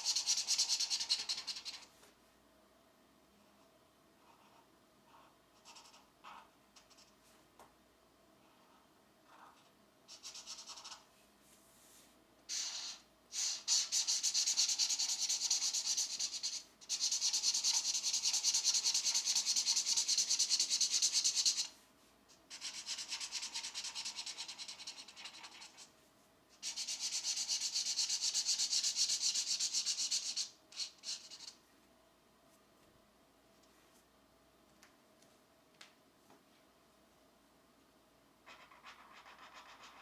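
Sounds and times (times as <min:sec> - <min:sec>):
colored pencil scratching on paper: 0:00.0 - 0:01.9, 0:04.2 - 0:07.2, 0:08.4 - 0:11.0, 0:12.5 - 0:21.7, 0:22.4 - 0:25.9, 0:26.6 - 0:31.6, 0:38.4 - 0:40.0.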